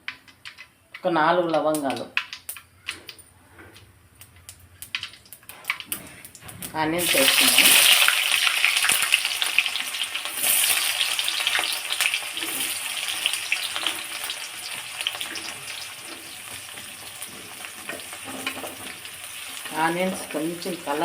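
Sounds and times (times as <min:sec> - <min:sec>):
onions sizzling in oil: 0:06.7 - 0:21.0
spatula scraping pan: 0:10.3 - 0:21.0.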